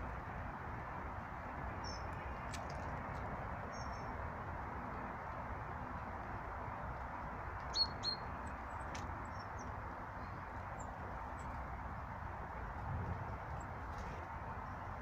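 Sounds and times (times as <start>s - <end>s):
small birds chirping: 3.7s - 4.2s, 7.7s - 11.5s.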